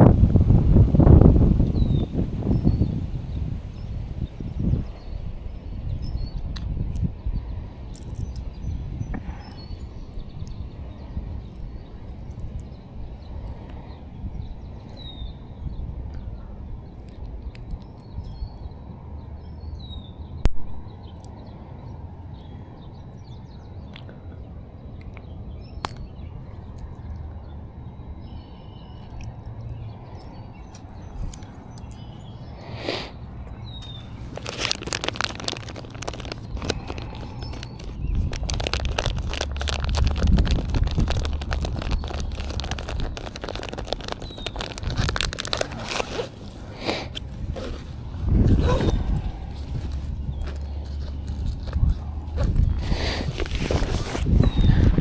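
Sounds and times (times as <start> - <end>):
crunching and crackling: 7.9 - 13.8, 29.0 - 55.0.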